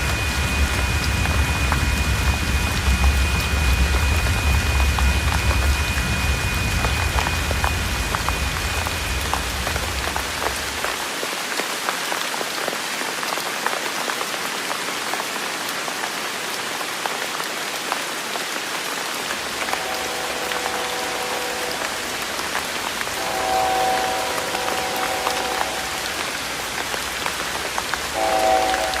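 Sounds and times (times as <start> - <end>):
low rumble: 0.0 - 10.9
steady rain: 0.0 - 29.0
distant train horn: 19.5 - 26.7, 28.1 - 29.0.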